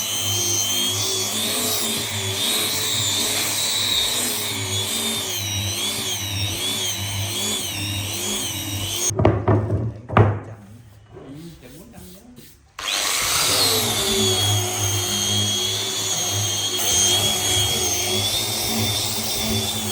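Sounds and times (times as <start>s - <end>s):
power tool running under load: 0.0s - 9.1s, 12.8s - 19.9s
sharp knocks: 9.1s - 10.6s.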